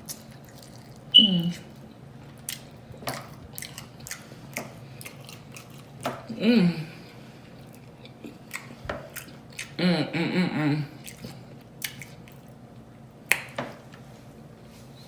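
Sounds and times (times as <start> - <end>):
chewing with wet lip smacks: 0.0 - 6.3, 7.5 - 9.8, 11.0 - 12.7.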